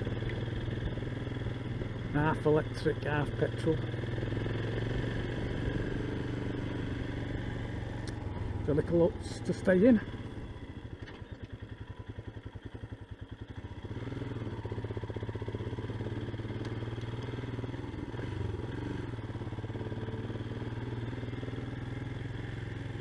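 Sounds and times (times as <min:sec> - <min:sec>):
motorcycle engine at low revs: 0:00.0 - 0:23.0.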